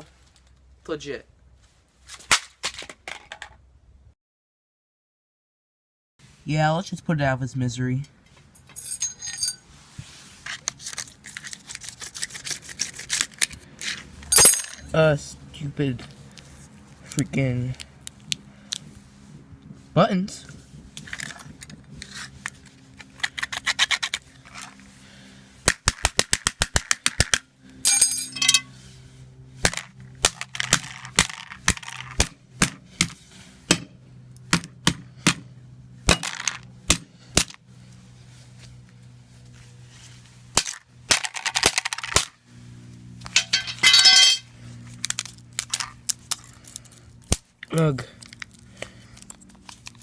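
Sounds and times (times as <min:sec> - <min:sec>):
scraping: 0:43.3 - 0:44.4.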